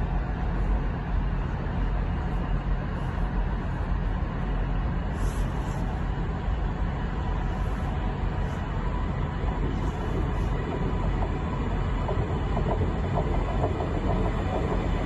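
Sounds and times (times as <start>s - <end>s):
train engine rumbling: 0.0s - 15.0s.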